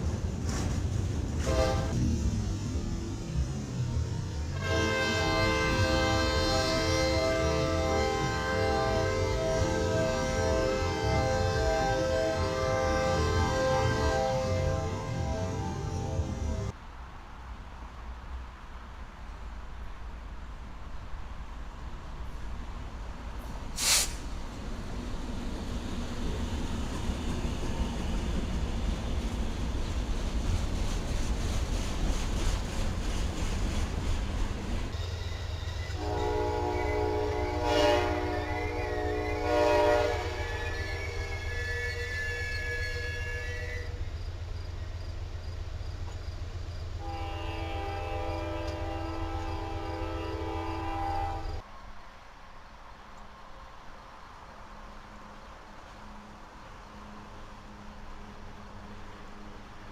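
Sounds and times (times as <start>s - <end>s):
train rumbling: 0.0s - 59.9s
locomotive horn: 1.4s - 2.0s, 4.6s - 16.7s, 35.9s - 44.0s, 47.0s - 51.6s
sharp hiss burst: 23.7s - 24.4s.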